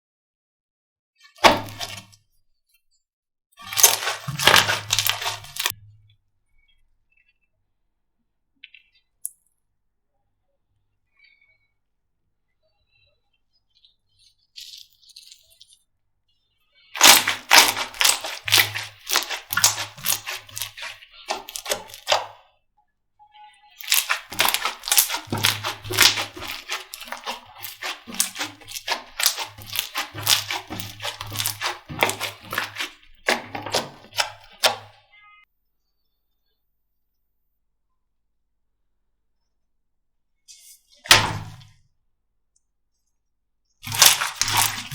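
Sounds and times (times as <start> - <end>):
slime crackling and popping: 1.4 - 2.1, 3.6 - 5.7, 17.0 - 22.4, 23.8 - 34.9, 43.8 - 44.9.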